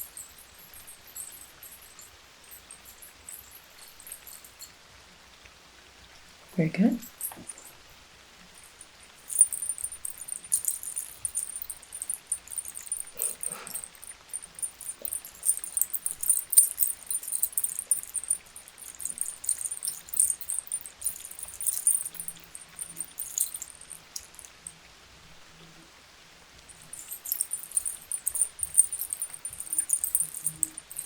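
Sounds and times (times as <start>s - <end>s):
high crackling rustle: 8.5s - 24.7s.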